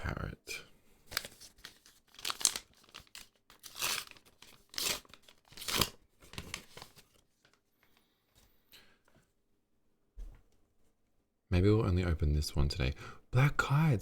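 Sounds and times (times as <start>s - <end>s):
wrapper tearing and crinkling: 1.1s - 7.2s.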